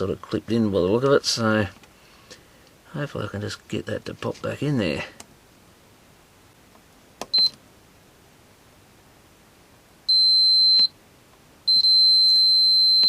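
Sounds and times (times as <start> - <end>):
multimeter high-pitched beeps: 7.3 - 7.6, 10.1 - 11.0, 11.7 - 13.0.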